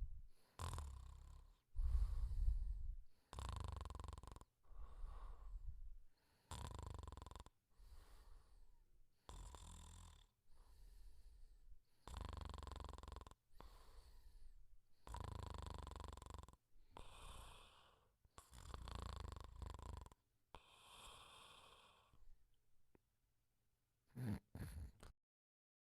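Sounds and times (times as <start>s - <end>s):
person snoring: 0.5s - 2.7s, 3.3s - 5.7s, 6.4s - 8.3s, 9.3s - 10.3s, 12.0s - 14.2s, 15.0s - 22.2s, 24.1s - 25.1s.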